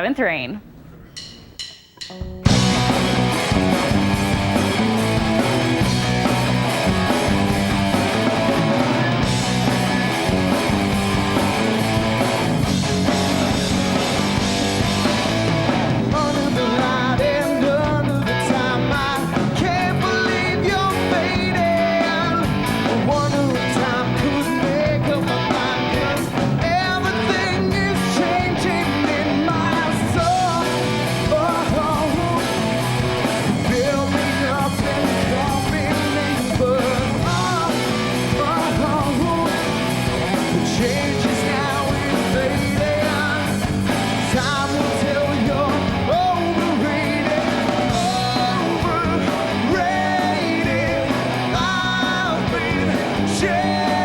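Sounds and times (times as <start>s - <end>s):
rock band playing: 0.0s - 54.0s
person singing lead vocal: 15.1s - 54.0s.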